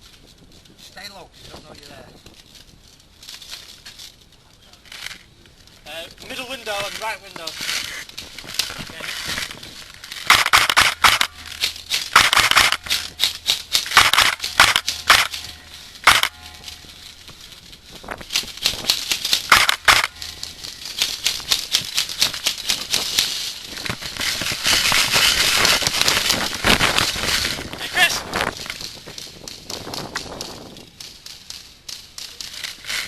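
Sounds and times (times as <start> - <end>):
airsoft gun firing bursts: 10.2 - 16.4, 19.4 - 20.3.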